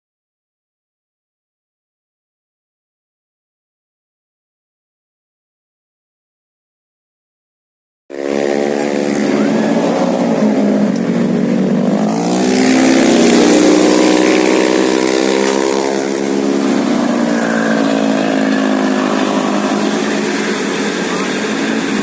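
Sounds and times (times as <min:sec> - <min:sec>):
bus engine pulling away: 0:08.1 - 0:22.0
road and wind noise: 0:08.1 - 0:22.0.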